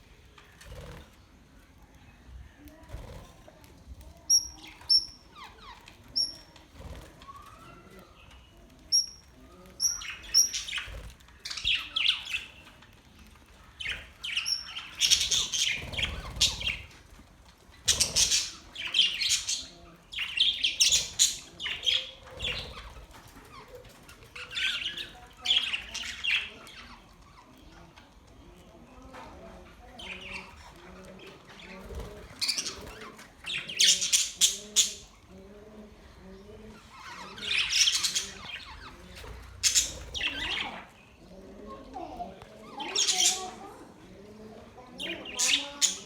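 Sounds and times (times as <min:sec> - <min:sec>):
budgerigars warbling chatter: 0:17.8 - 0:22.9, 0:36.8 - 0:41.0, 0:42.8 - 0:43.6.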